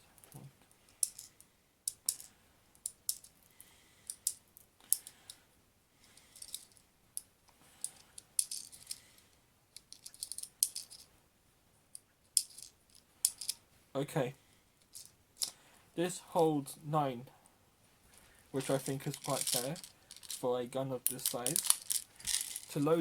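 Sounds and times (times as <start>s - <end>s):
pellets clicking into magazine: 19.0s - 20.4s, 21.1s - 22.8s.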